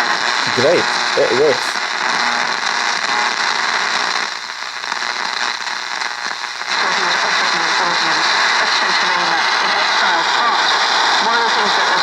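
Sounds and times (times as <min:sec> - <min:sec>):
radio static hiss: 0:00.0 - 0:03.5
faint radio voice: 0:00.4 - 0:01.8.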